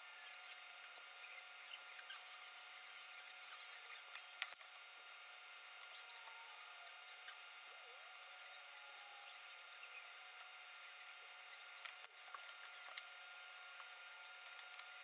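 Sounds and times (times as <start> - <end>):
small tools clicking and rubbing: 5.8 - 7.8, 9.2 - 13.2.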